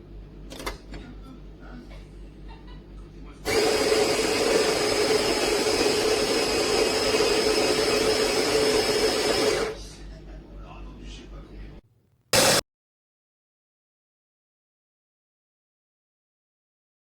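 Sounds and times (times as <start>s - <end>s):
electric coffee grinder whirring: 3.5s - 9.8s, 12.4s - 12.6s.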